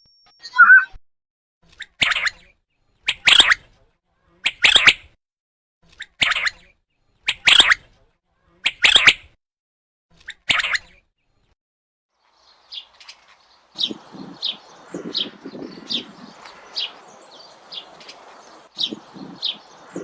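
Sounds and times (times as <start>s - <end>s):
bird rasping calls: 3.1s - 3.6s, 7.3s - 7.8s, 13.8s - 20.0s.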